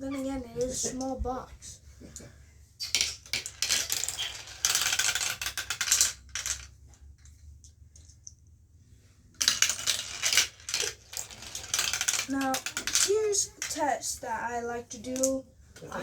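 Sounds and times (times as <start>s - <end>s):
marbles rattling down a marble run: 2.8s - 6.8s, 9.4s - 14.3s.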